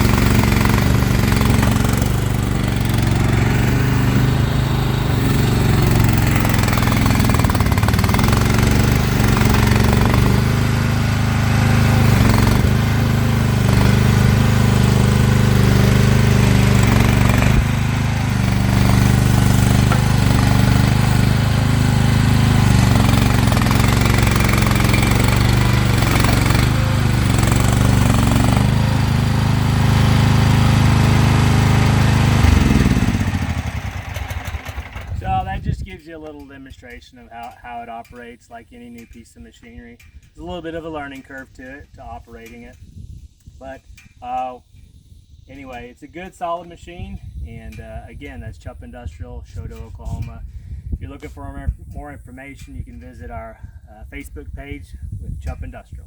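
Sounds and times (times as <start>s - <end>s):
skid steer engine running: 0.0s - 43.0s.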